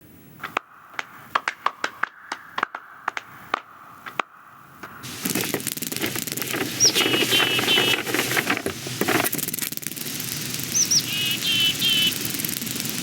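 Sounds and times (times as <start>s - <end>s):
faint hum: 0.0s - 13.0s
dense clatter of activity: 5.1s - 9.9s
sharp irregular clicks and ticks: 5.1s - 13.0s.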